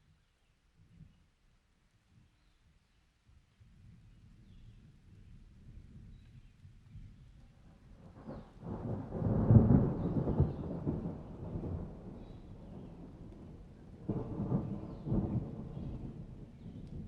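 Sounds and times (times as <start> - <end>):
rain: 1.3 - 17.0
thunder rumbling: 8.0 - 17.0.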